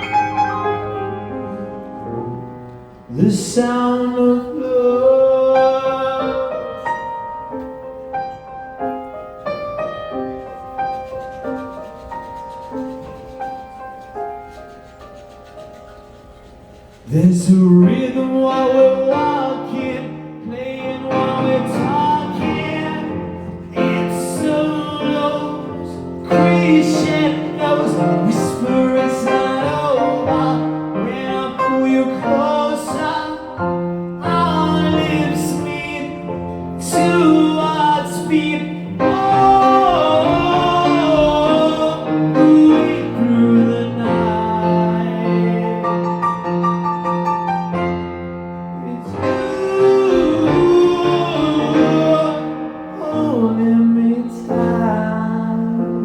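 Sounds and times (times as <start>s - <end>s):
person singing: 17.0s - 46.6s, 48.8s - 56.0s.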